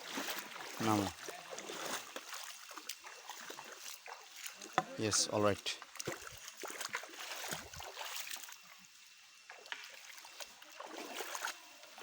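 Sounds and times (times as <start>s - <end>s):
small water splashes: 0.0s - 12.0s
stream water trickling: 0.0s - 12.0s.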